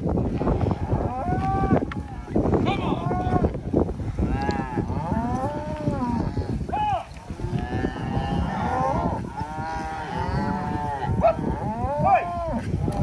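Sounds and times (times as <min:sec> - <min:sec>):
cattle mooing: 0:04.2 - 0:12.8.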